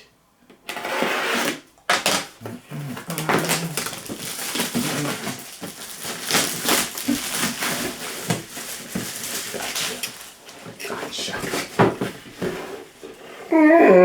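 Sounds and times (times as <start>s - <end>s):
sharp packaging clicks: 1.5s - 10.6s
cardboard and plastic crinkling: 1.9s - 13.4s.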